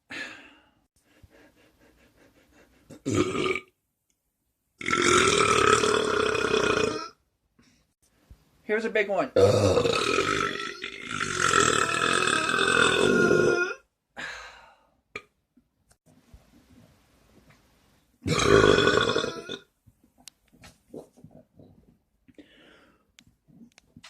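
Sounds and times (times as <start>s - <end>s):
person burping loudly: 2.9s - 3.8s, 4.8s - 7.2s, 9.4s - 13.8s, 18.2s - 19.7s.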